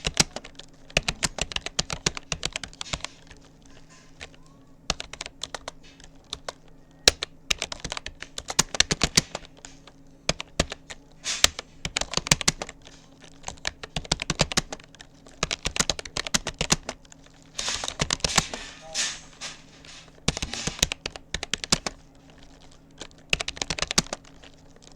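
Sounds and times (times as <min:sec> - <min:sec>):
computer keyboard typing: 0:00.0 - 0:24.9.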